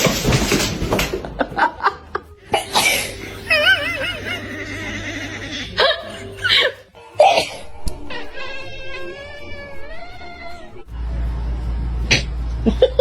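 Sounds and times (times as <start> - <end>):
person laughing: 1.2 - 7.7, 12.6 - 13.0
warbling tone: 7.5 - 12.8.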